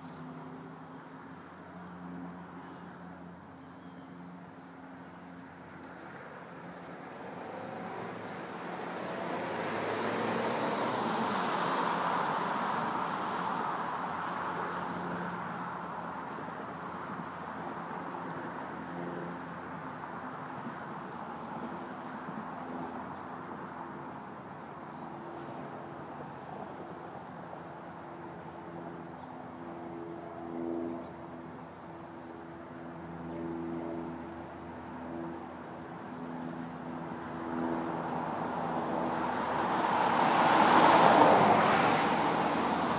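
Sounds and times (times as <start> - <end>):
crickets chirring: 0.0 - 42.9
vehicle passing by: 5.4 - 24.2, 33.9 - 42.9.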